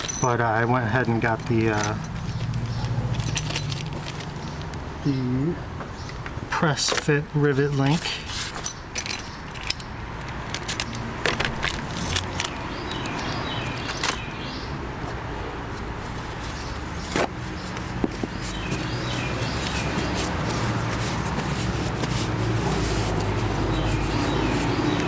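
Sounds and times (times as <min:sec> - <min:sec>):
small metal clicks and clinks: 0:01.1 - 0:04.8, 0:08.6 - 0:14.3
packaging being handled: 0:16.2 - 0:25.0.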